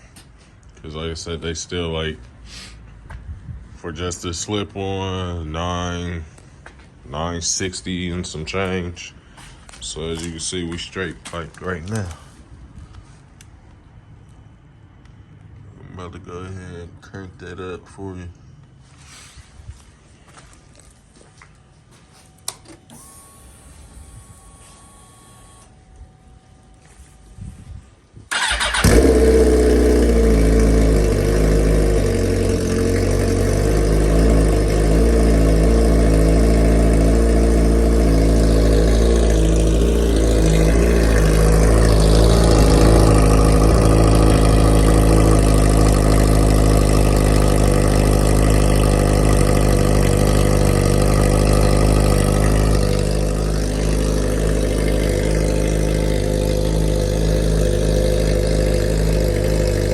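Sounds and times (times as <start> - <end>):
motorcycle engine starting and idling: 22.4 - 26.0, 28.2 - 59.9.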